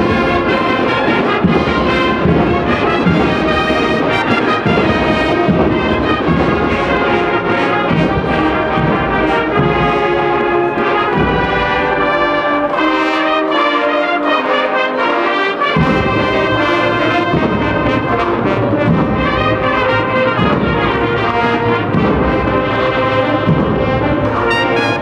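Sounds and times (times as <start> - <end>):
steady drum beat: 0.0 - 12.2, 23.4 - 25.0
trumpets and trombones melody: 0.0 - 25.0.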